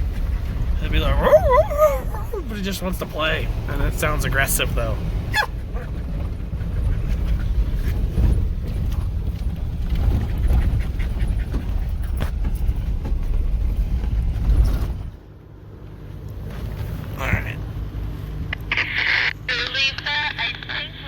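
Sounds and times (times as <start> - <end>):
vehicle low rumble: 0.0 - 21.0
knocks and rattles: 5.8 - 15.2.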